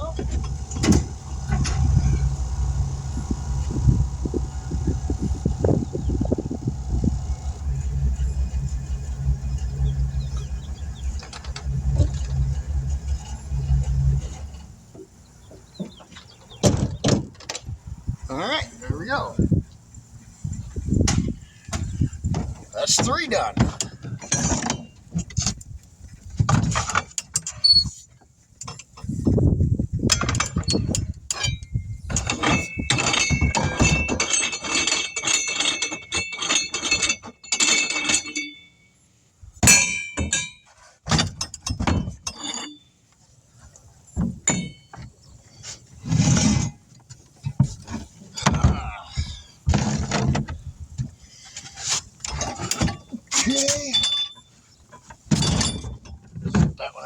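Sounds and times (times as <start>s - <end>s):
metallic scraping and ringing: 0.0s - 15.5s, 30.4s - 39.1s, 39.7s - 43.0s, 44.5s - 45.0s
tire tools thunking and knocking: 0.0s - 18.2s, 19.4s - 38.8s, 39.5s - 56.8s.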